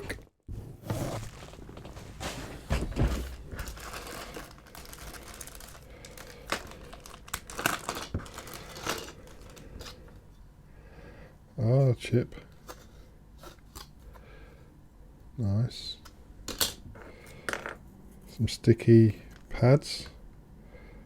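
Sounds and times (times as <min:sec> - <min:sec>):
packaging crinkling and rustling: 0:00.8 - 0:10.1.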